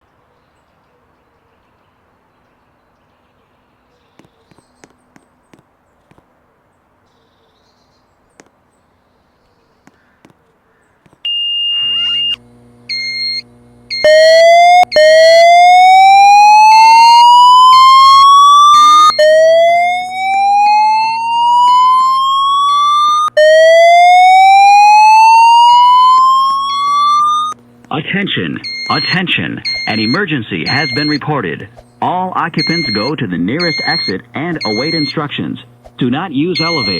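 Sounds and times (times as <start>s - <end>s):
fire alarm high beep: 11.2s - 27.6s, 28.6s - 31.3s, 32.5s - 35.2s, 36.6s - 36.9s
slow-whoop evacuation tone: 11.3s - 27.6s, 28.5s - 31.4s
higher tone beeping: 11.3s - 36.9s
low hum: 11.3s - 36.9s.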